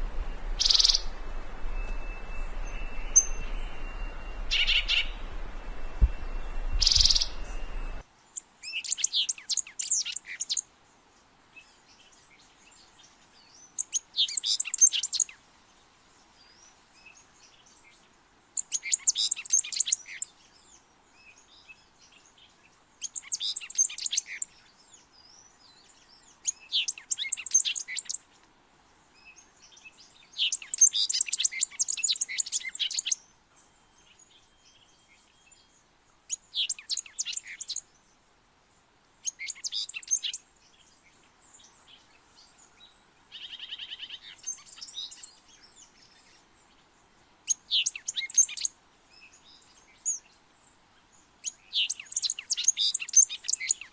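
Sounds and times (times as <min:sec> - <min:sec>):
bird chattering song: 0:00.0 - 0:08.0, 0:26.4 - 0:28.2, 0:30.4 - 0:33.2, 0:39.2 - 0:40.4, 0:47.5 - 0:48.7, 0:51.5 - 0:53.9
buzzy bird note: 0:00.0 - 0:08.0.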